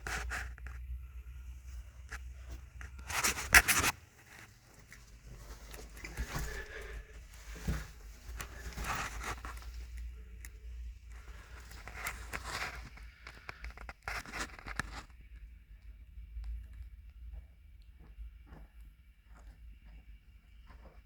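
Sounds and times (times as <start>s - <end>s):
scraping and rustling: 0.0s - 15.2s
low steady hum: 0.0s - 21.0s.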